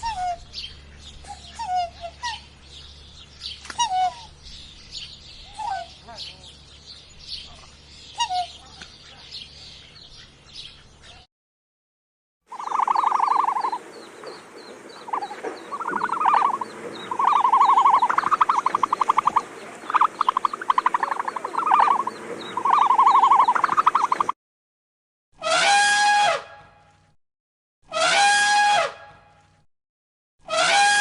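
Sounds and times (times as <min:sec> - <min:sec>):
birds chirping faintly: 0:00.0 - 0:11.3, 0:12.5 - 0:24.3
frogs calling in pulsed trills: 0:12.5 - 0:13.8, 0:15.1 - 0:24.3.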